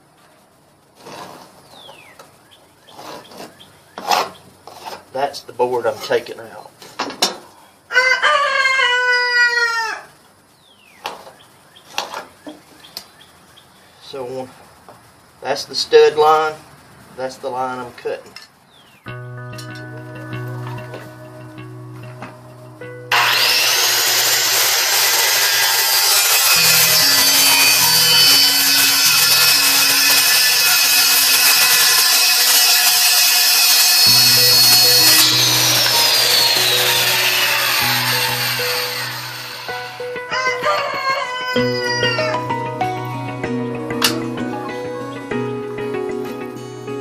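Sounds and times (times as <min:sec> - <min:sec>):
rooster crowing: 0:07.8 - 0:10.2, 0:39.7 - 0:42.6
electric saw cutting wood: 0:20.4 - 0:42.4.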